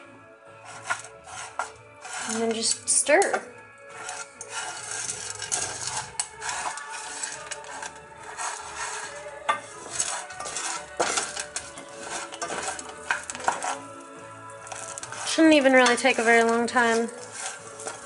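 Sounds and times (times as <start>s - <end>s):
utensil scraping kernels in pan: 0.6s - 18.0s
light sizzle: 9.8s - 18.0s.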